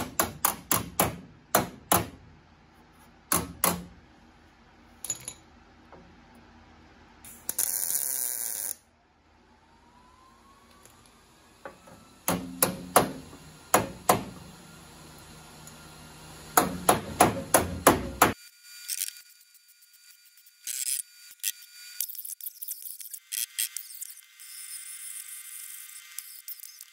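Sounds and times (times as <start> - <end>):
hammer striking sheet metal: 12.3 - 14.4, 16.6 - 18.4.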